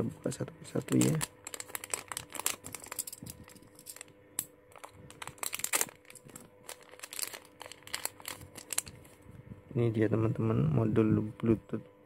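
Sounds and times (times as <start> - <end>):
packaging crinkling and crackling: 0.7 - 9.3.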